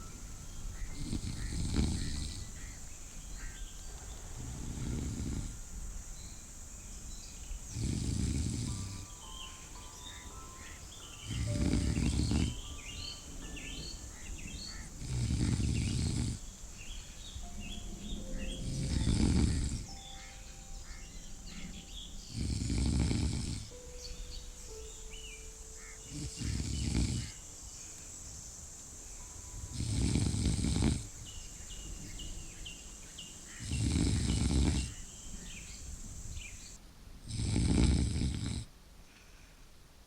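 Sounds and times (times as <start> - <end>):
loud snoring: 0.9 - 2.8, 4.4 - 5.7, 7.7 - 9.2, 11.2 - 13.0, 14.9 - 16.5, 18.3 - 20.0, 22.3 - 23.8, 26.1 - 27.4, 29.7 - 31.2, 33.6 - 35.0, 36.4 - 38.7.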